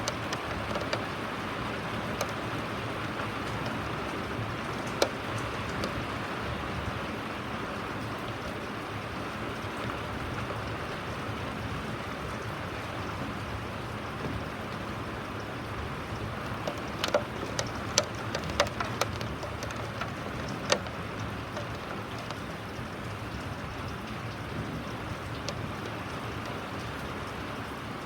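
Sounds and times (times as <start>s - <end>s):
steady rain falling: 0.0s - 28.0s
sharp taps of drops: 16.6s - 22.5s.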